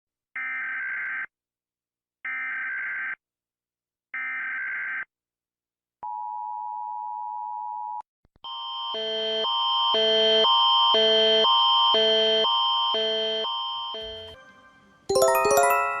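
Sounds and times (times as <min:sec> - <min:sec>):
two-tone attention signal: 0:13.9 - 0:14.4.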